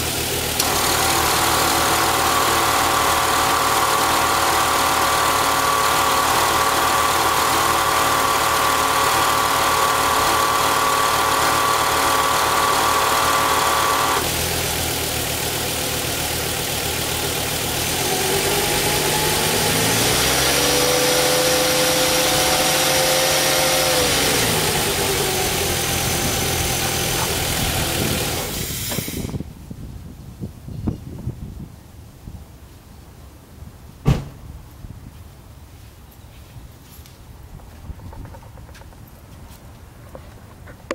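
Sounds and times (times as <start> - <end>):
car engine idling and revving: 0.0 - 29.4.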